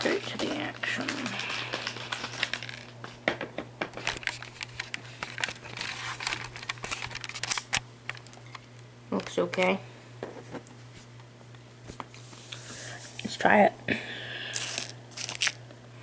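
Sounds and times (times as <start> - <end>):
wrapper crinkling: 0.0 - 3.2, 4.0 - 8.4, 14.5 - 15.6.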